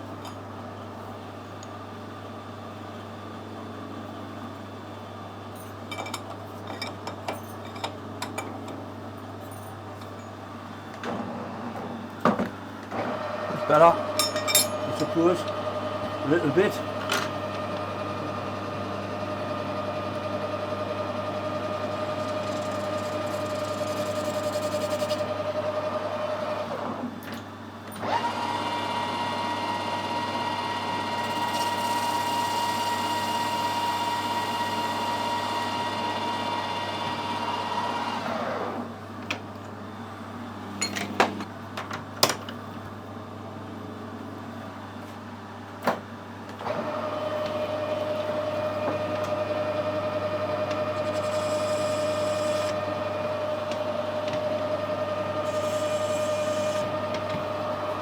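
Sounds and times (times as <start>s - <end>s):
metal lathe whine: 13.2s - 26.8s, 28.0s - 38.8s, 46.7s - 58.0s.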